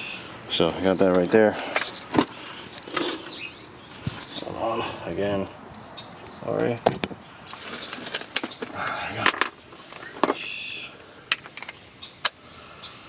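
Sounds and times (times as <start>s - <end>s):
metal tools clinking: 7.7s - 10.4s.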